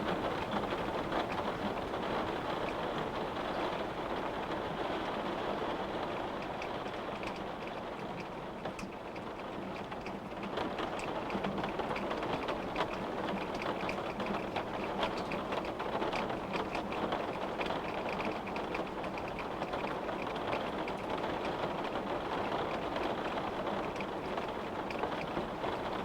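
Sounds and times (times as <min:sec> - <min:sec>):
steady rain falling: 0:00.0 - 0:06.9, 0:10.6 - 0:26.0.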